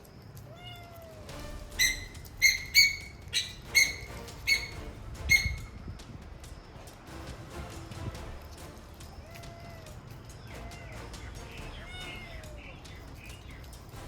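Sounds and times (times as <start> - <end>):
bird chirping: 1.4 - 6.0, 9.2 - 14.0
faint low bird call: 1.7 - 5.8.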